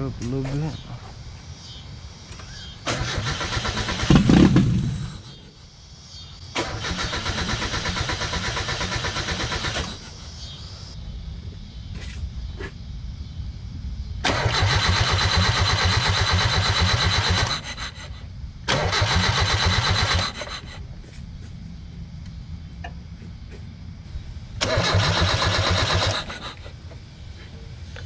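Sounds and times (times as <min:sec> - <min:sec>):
car engine cranking: 0:02.9 - 0:05.4, 0:06.6 - 0:10.0, 0:14.3 - 0:18.1, 0:18.7 - 0:20.7, 0:24.6 - 0:26.7.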